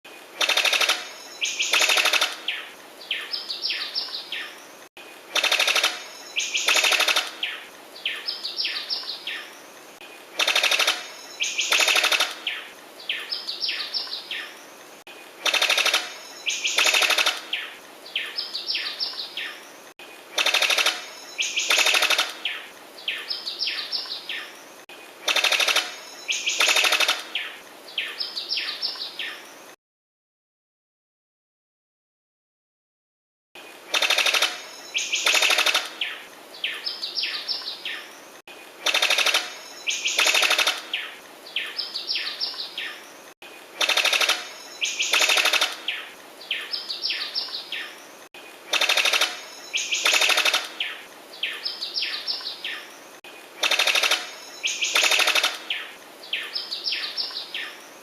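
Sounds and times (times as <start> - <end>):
bird rattling bursts: 0.4 - 2.5, 5.3 - 7.4, 10.4 - 12.5, 15.4 - 17.5, 20.4 - 22.4, 25.2 - 27.3, 33.9 - 36.0, 38.8 - 40.9, 43.8 - 45.9, 48.7 - 50.8, 53.6 - 55.7.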